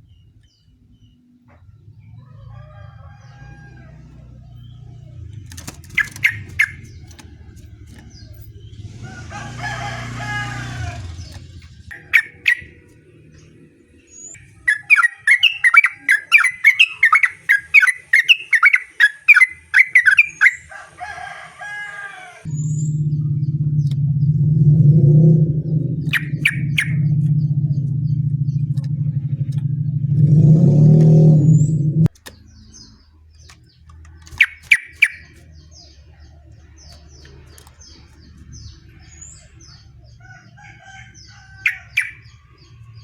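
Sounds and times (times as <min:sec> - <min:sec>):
bird chirping: 0:00.0 - 0:43.0
low hum: 0:22.5 - 0:33.4.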